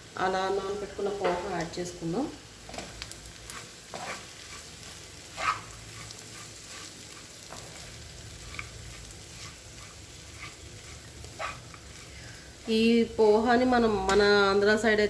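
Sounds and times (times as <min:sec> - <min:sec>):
faint sizzle: 0:00.0 - 0:15.0
spatula scraping a pan: 0:03.5 - 0:12.4.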